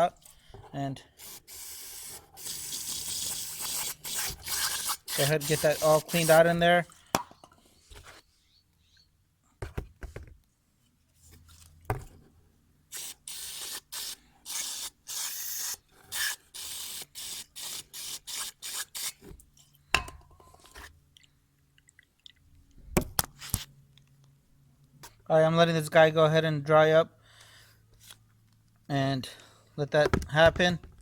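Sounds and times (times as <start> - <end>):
aerosol spray hissing bursts: 1.2 - 6.4, 12.9 - 19.1.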